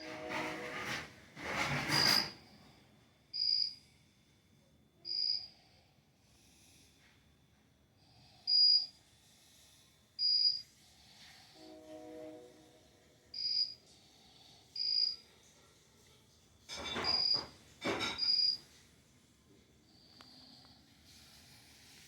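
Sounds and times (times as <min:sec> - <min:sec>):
high cricket chirps: 0:03.3 - 0:03.8, 0:05.0 - 0:05.5, 0:08.5 - 0:08.9, 0:10.2 - 0:10.6, 0:13.4 - 0:13.8, 0:14.8 - 0:15.2.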